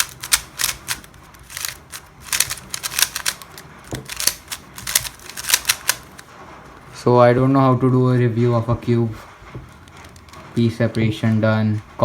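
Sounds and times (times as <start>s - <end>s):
puzzle cube plastic clicks: 0.0s - 6.2s.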